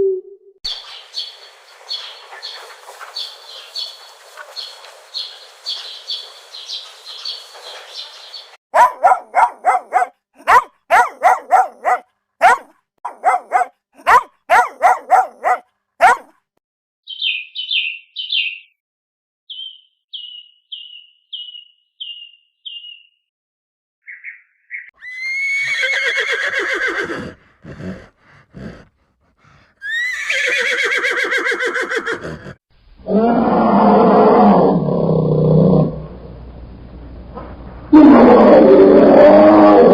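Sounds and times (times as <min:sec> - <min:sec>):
dog barking: 0:08.7 - 0:16.4
high bird chirps: 0:17.1 - 0:18.8, 0:19.5 - 0:23.3, 0:24.0 - 0:25.8.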